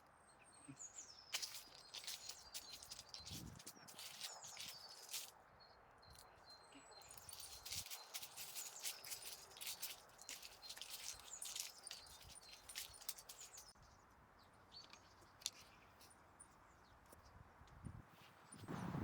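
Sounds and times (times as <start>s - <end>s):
dry leaves and twigs crackling: 0.7s - 19.0s.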